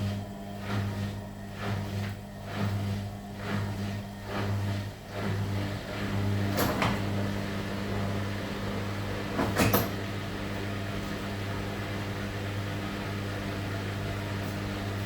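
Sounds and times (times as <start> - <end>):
washing machine motor hum: 0.0 - 15.0
washing machine banging: 9.3 - 10.0.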